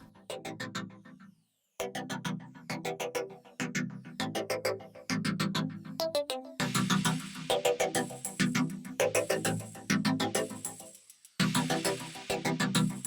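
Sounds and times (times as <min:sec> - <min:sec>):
electronic music with synthesizer: 0:06.5 - 0:13.0.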